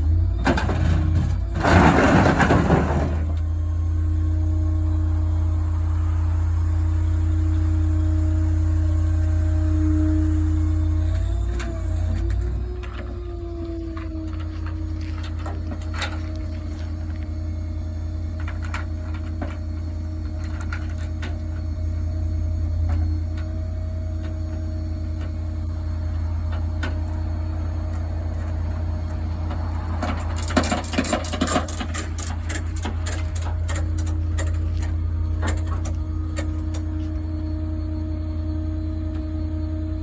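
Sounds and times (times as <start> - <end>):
engine humming steadily: 0.0 - 40.0
rattling and clicking: 29.5 - 37.0.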